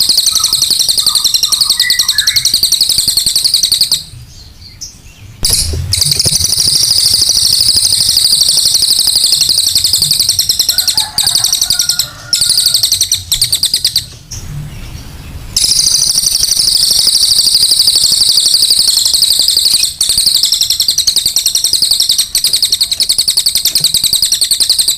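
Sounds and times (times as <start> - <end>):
bird chattering trill: 0.0 - 14.3, 15.6 - 24.9.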